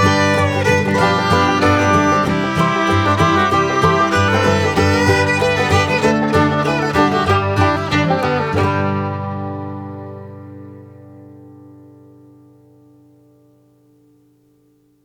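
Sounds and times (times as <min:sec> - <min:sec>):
bluegrass fiddle and banjo music: 0:00.0 - 0:10.8.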